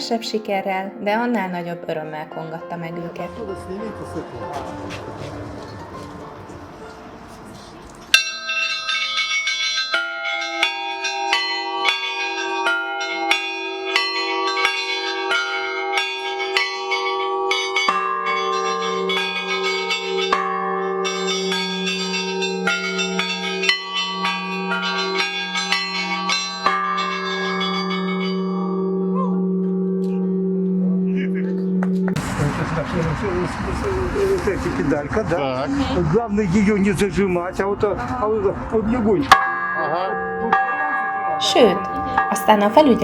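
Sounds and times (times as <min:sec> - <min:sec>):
large bass bell ringing: 0:08.1 - 0:31.8, 0:39.3 - 0:43.0
humming mid-sized bell: 0:08.2 - 0:31.1, 0:39.6 - 0:43.0.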